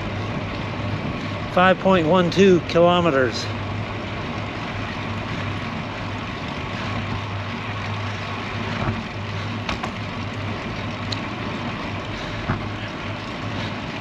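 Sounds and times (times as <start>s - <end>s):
bike tyres rolling on pavement: 0.0s - 14.0s
sharp knocks from road bumps: 8.8s - 9.0s, 9.6s - 10.0s, 12.4s - 12.7s.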